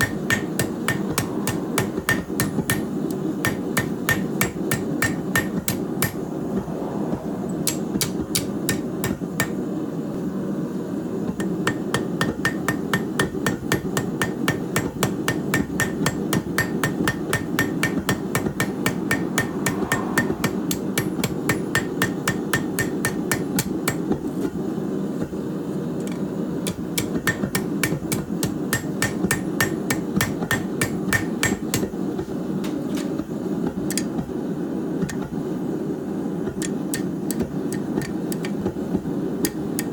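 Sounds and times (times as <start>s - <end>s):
hammer striking steel on anvil: 0.0s - 6.3s, 7.6s - 9.6s, 11.4s - 24.5s, 26.1s - 32.0s, 36.5s - 38.6s, 39.4s - 39.9s
low rushing noise: 0.6s - 3.6s, 5.6s - 10.4s, 18.2s - 22.2s.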